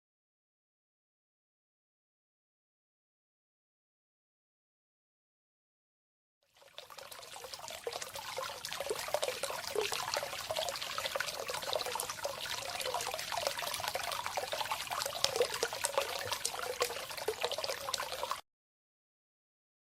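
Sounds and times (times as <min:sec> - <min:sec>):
water flowing and trickling: 0:06.4 - 0:18.4.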